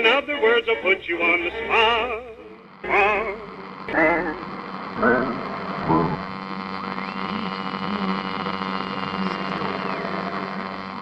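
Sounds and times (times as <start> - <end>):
singing from radio: 0.0 - 6.2
electrical hum and buzz: 0.0 - 11.0
faint static: 0.0 - 11.0.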